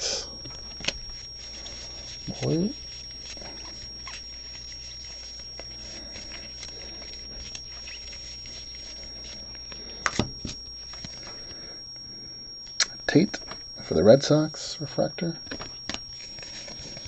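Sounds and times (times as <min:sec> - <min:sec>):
faint steady hum: 0:00.0 - 0:17.0
trading cards rustling: 0:00.4 - 0:11.7, 0:15.5 - 0:17.0.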